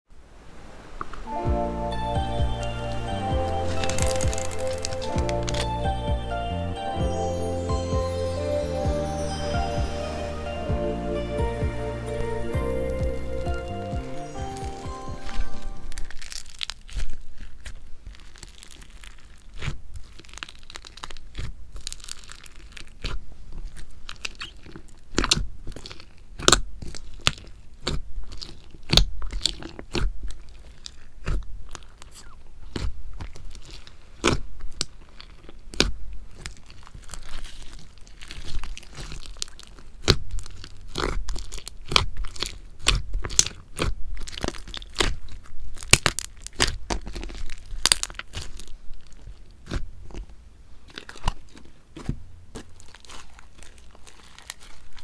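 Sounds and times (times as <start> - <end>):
slime crackling as squeezed by hand: 1.2 - 6.5, 14.4 - 55.0.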